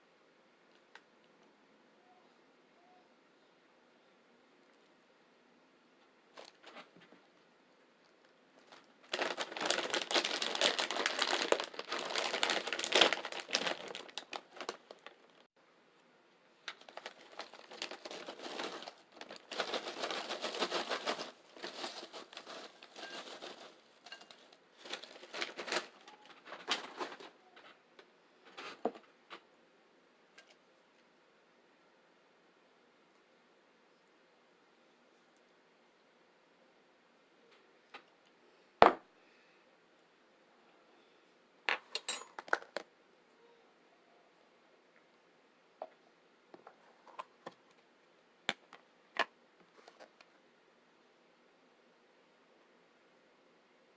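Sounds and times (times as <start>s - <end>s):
chips crunching: 8.6s - 15.4s, 16.7s - 23.8s.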